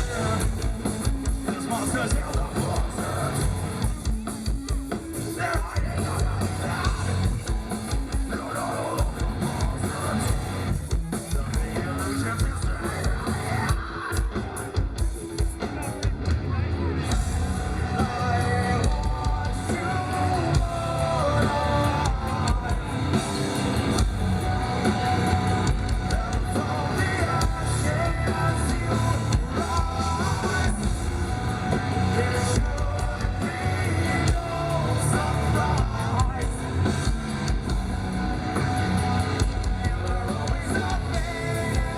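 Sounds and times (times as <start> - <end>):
male lead vocal singing: 0.0 - 4.0, 5.1 - 15.0, 15.6 - 24.1, 24.8 - 37.2, 39.3 - 41.9
hard rock band playing: 0.0 - 41.9.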